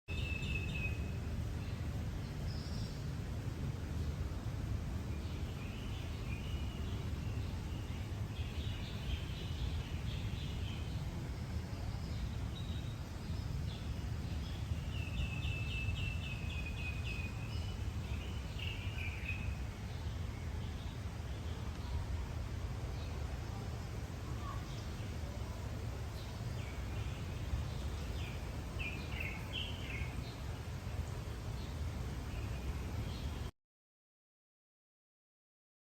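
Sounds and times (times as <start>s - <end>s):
birds singing and chirping: 0.1s - 3.1s, 5.1s - 22.0s, 24.3s - 33.5s.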